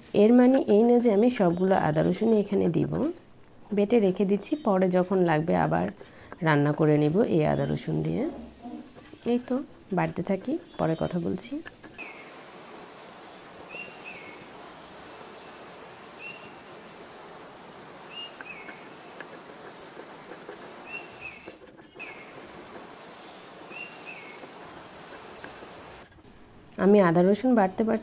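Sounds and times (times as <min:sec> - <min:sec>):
outdoor background hiss: 0:00.0 - 0:28.0
small birds chirping: 0:04.0 - 0:09.4, 0:10.0 - 0:26.0.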